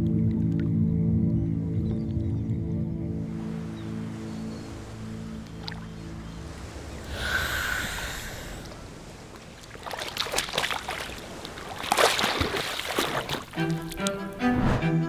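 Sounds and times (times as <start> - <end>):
water rushing: 3.3 - 15.0
water splashing and sloshing: 3.3 - 15.0.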